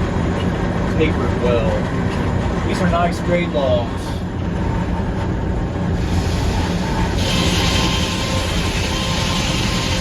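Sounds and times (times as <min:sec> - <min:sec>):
sawmill machinery hum: 0:00.0 - 0:10.0
saw hissing through log: 0:06.0 - 0:10.0.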